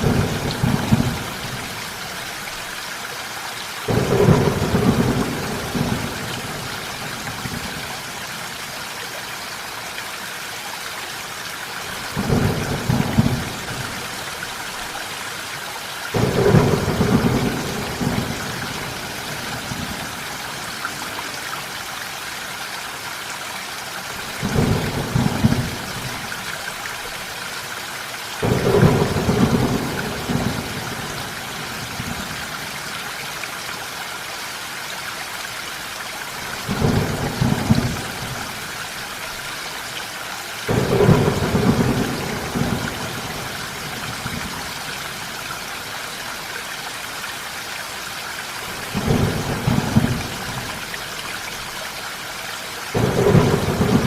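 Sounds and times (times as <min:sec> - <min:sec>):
thunder rumbling: 0:00.0 - 0:01.6, 0:03.9 - 0:06.7, 0:16.1 - 0:20.3, 0:28.4 - 0:31.2, 0:40.7 - 0:44.5, 0:49.0 - 0:50.7, 0:53.0 - 0:54.0
steady rainfall: 0:00.0 - 0:54.0.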